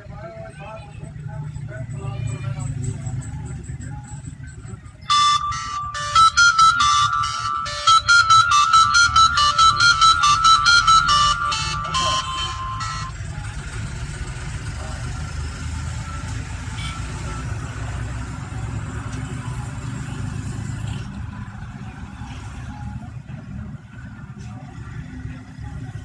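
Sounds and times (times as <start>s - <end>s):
low traffic rumble: 0.0s - 26.0s
phone ringtone electronic notes: 5.1s - 13.4s.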